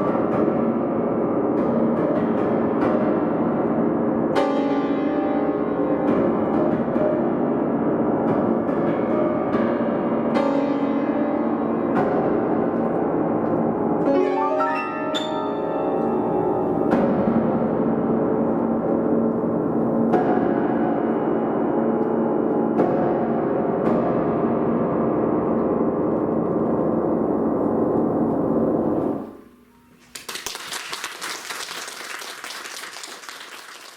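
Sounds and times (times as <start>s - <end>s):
solo piano chords: 0.0s - 29.7s
classical ensemble closing chord: 14.0s - 17.0s
audience applause: 30.1s - 33.9s.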